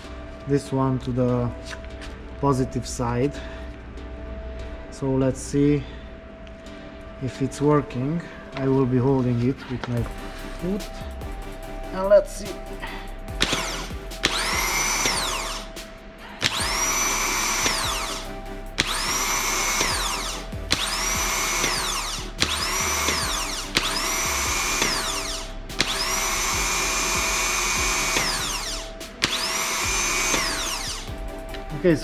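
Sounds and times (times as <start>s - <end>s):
starter motor whine: 13.4s - 15.7s, 16.5s - 31.7s.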